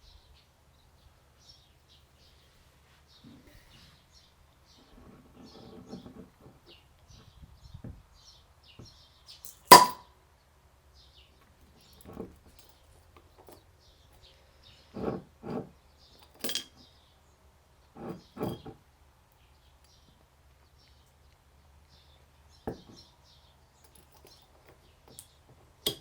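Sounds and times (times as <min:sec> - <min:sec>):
faint bird chirps: 0:00.0 - 0:04.9
beer bottle popping open: 0:09.7 - 0:10.0
glass clink: 0:09.7 - 0:10.0.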